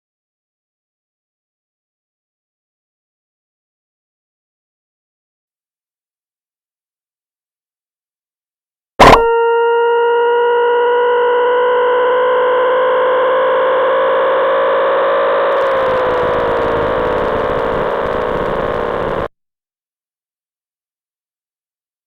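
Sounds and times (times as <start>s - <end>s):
buzzy synthesized tone: 15.6s - 19.3s.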